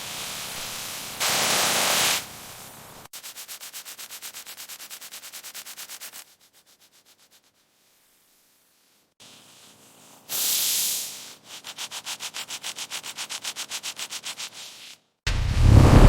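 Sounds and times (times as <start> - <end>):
spray hiss: 0.0 - 6.2, 7.6 - 13.0
scrubbing strokes on car surface: 3.2 - 15.1
loud low rumble: 15.3 - 16.0.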